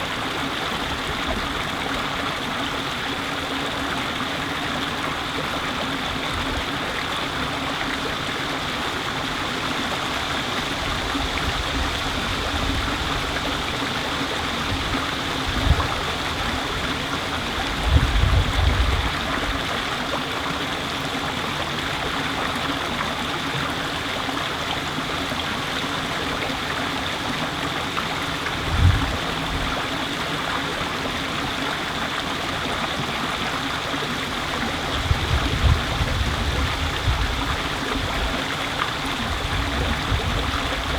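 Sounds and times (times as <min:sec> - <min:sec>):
stream flowing: 0:00.0 - 0:40.9
wind buffeting microphone: 0:10.1 - 0:20.2, 0:28.0 - 0:31.0, 0:34.5 - 0:40.9.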